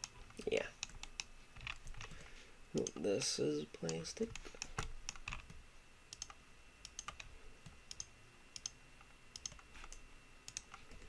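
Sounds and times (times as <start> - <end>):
mouse and keyboard clicks: 3.8 - 8.8, 9.4 - 11.0.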